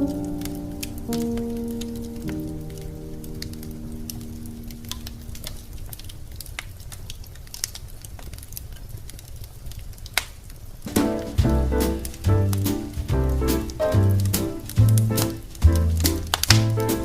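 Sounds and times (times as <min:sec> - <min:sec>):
music: 0:00.0 - 0:05.2, 0:10.9 - 0:17.0
wood fire crackling: 0:00.0 - 0:17.0.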